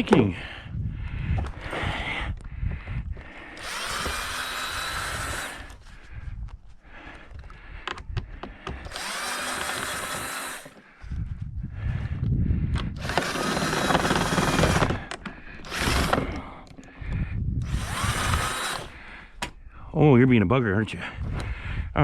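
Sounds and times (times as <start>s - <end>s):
power drill whine: 3.5s - 5.9s, 8.6s - 10.9s, 12.9s - 16.9s, 17.6s - 19.1s
clicks and knocks of parts handled: 7.2s - 9.0s, 14.8s - 17.2s.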